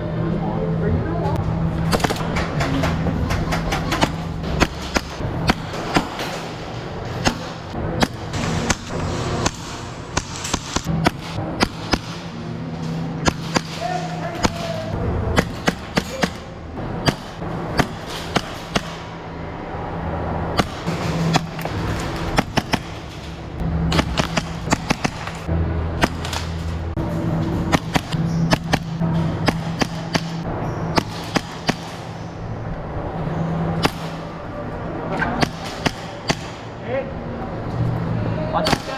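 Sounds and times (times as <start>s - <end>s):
airsoft pistol shots: 10.2s - 12.2s, 23.9s - 26.6s, 27.7s - 32.1s.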